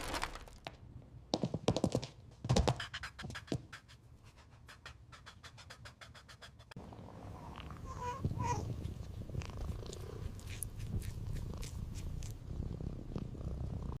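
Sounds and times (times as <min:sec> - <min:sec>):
cat purring: 0:06.8 - 0:14.0.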